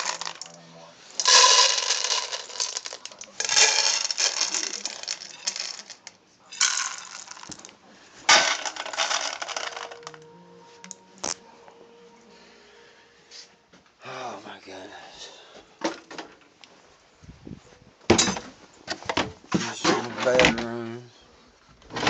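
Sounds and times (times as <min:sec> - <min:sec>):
dry dog food pouring into bowls: 0:00.0 - 0:00.6, 0:01.2 - 0:07.7, 0:08.3 - 0:10.2.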